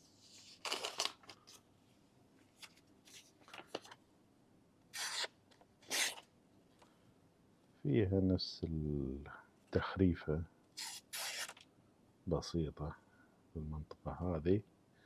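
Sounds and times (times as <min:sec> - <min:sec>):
pocket knife scraping rubs: 0:05.0 - 0:05.3, 0:05.9 - 0:06.2, 0:10.8 - 0:11.6.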